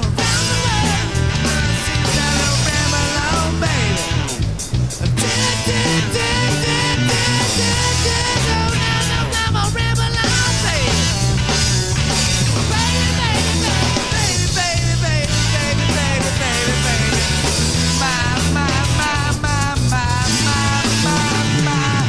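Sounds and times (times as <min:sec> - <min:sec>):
rock band playing: 0:00.0 - 0:22.0.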